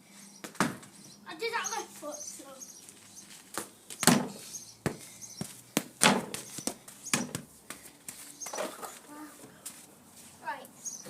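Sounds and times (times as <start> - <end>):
football bouncing thuds: 3.6 - 5.0, 5.8 - 7.5.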